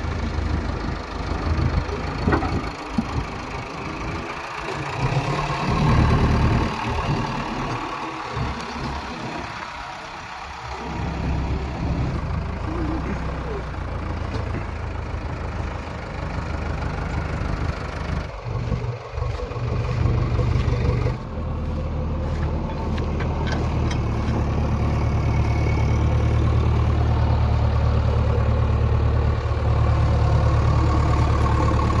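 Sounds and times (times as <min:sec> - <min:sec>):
heavy diesel engine running: 0:00.0 - 0:32.0.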